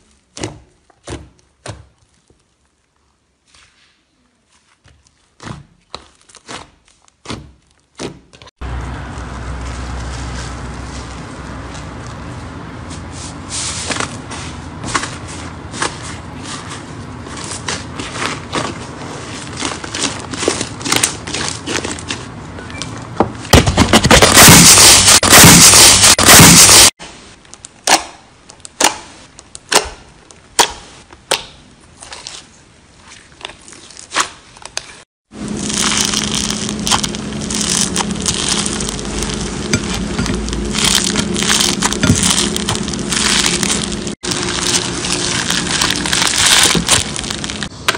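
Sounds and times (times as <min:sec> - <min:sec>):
slime crunching: 0:35.4 - 0:47.7
slime squelching: 0:35.4 - 0:47.7
slime crackling and popping: 0:35.5 - 0:47.7.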